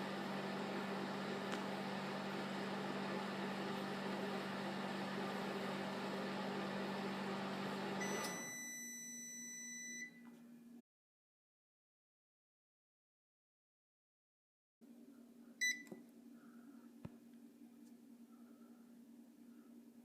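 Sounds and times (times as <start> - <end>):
microwave end tone: 0.0 - 10.3
microwave oven humming: 0.0 - 10.8, 14.9 - 20.0.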